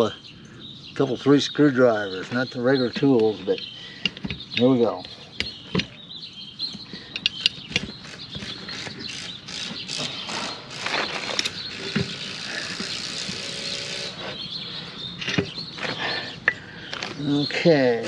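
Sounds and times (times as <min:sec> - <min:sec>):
rubber and metal scraping: 0:07.8 - 0:14.4.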